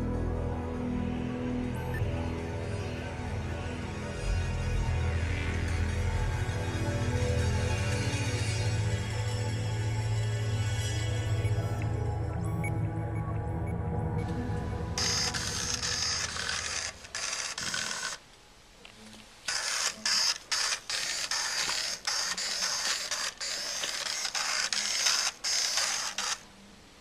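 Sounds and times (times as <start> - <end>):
toy car motors whirring: 15.0 - 18.2, 19.4 - 26.4.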